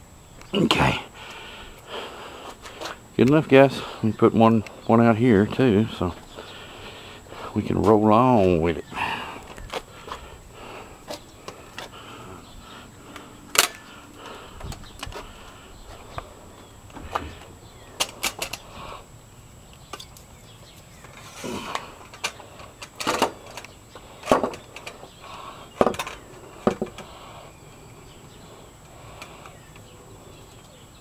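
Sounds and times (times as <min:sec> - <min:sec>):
roller stands clicking and knocking: 0:21.0 - 0:25.1, 0:25.8 - 0:27.1.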